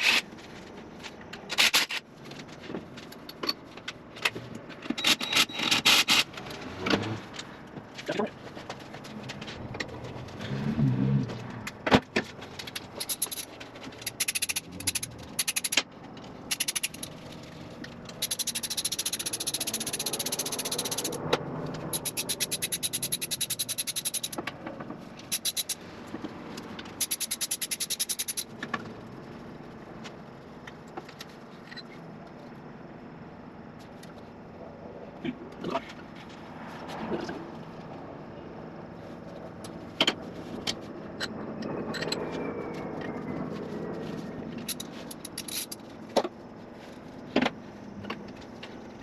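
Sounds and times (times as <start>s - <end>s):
ratchet wrench clicking: 5.0s - 6.3s, 12.7s - 15.9s, 16.5s - 17.3s, 18.1s - 21.2s, 21.9s - 24.5s, 25.3s - 25.8s, 27.0s - 28.5s, 44.6s - 45.8s
metal tools knocking on engine: 18.2s - 21.2s, 21.9s - 24.5s.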